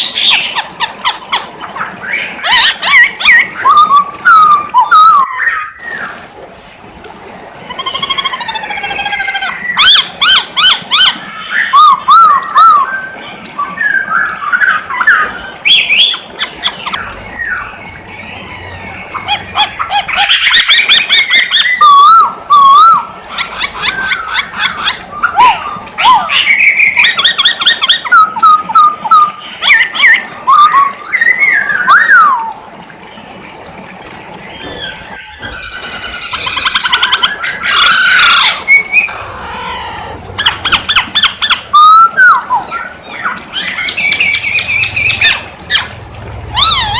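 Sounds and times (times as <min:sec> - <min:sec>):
laughingthrush singing: 0:07.6 - 0:32.6, 0:34.6 - 0:46.9.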